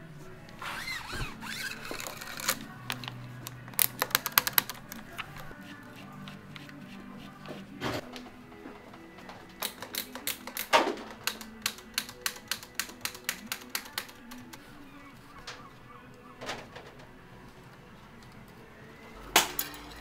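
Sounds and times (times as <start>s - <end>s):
bicycle gear shifter clicking: 0.6s - 5.4s, 9.6s - 14.6s.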